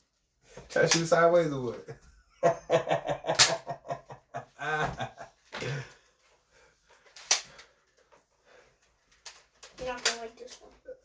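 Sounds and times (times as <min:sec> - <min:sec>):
person laughing: 0:02.3 - 0:05.9.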